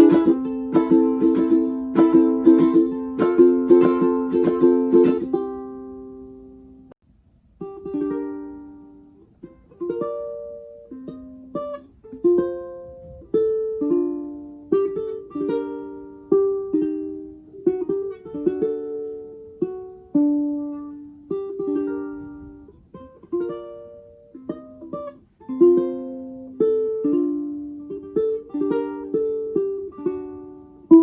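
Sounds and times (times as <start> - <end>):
ukulele strummed chord: 0.0 - 6.9, 7.6 - 31.0
ukulele picked melody: 0.0 - 31.0.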